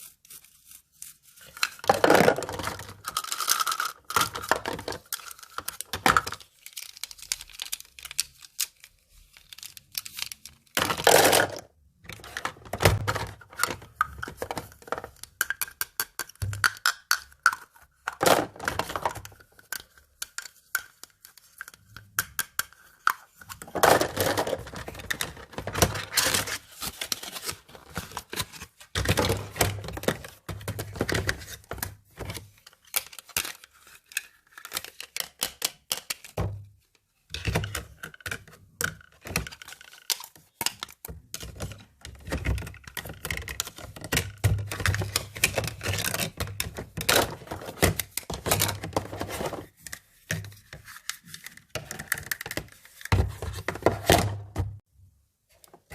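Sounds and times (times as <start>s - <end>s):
plastic toy pieces clicking: 3.0s - 8.8s.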